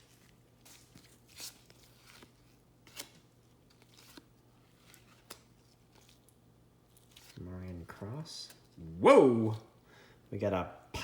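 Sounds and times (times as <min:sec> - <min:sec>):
trading cards rustling by hand: 0:00.0 - 0:08.8.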